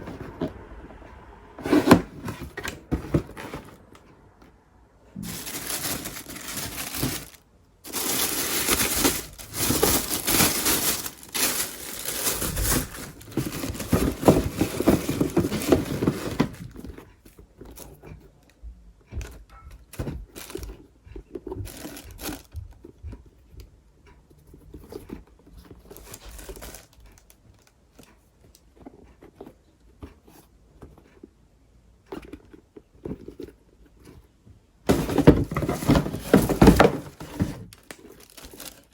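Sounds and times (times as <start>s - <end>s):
packing paper crinkling: 5.2s - 16.7s, 34.9s - 38.9s.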